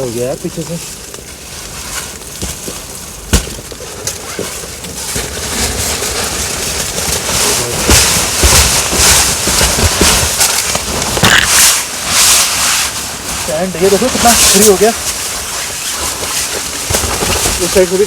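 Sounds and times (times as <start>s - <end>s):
tent fabric swishing and rustling: 0.0s - 18.0s
knock on tent fabric: 7.8s - 11.6s.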